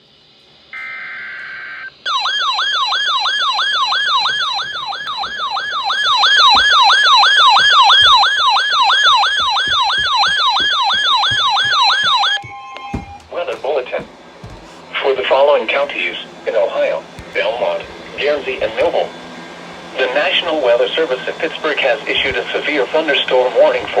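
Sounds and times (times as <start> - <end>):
electronic siren yelping: 0.8 - 14.1.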